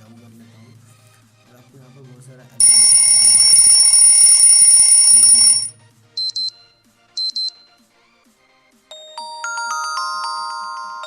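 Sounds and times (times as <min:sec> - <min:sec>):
bell-like chiming melody: 0:02.6 - 0:05.7, 0:08.9 - 0:11.0
steady electronic alarm tone: 0:02.6 - 0:05.7.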